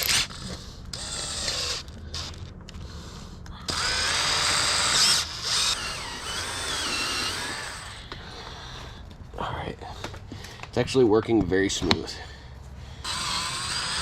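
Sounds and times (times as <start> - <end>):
power drill boring metal: 0.0 - 2.4, 3.7 - 8.1, 13.0 - 14.0.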